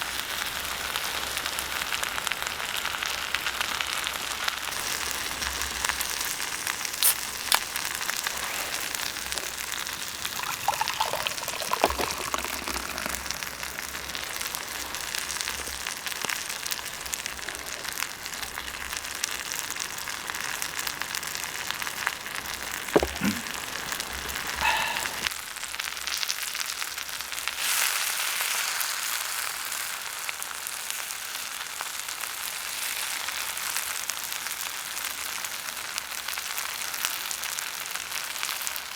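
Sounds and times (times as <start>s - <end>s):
food sizzling in a wok: 0.0s - 8.9s, 25.5s - 38.9s
campfire crackles: 0.0s - 25.3s.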